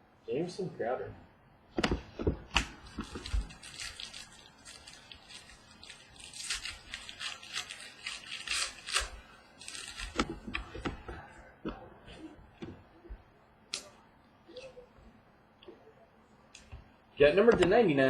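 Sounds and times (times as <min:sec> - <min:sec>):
cards swishing and rustling: 0:01.8 - 0:11.3.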